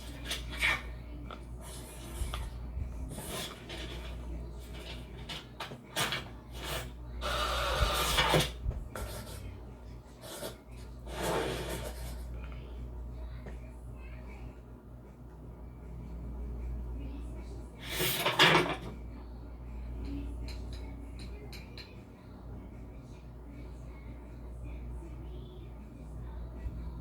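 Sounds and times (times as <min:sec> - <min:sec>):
low steady hum: 0:00.0 - 0:27.0
rubbing and scraping: 0:01.6 - 0:07.0, 0:10.2 - 0:12.3.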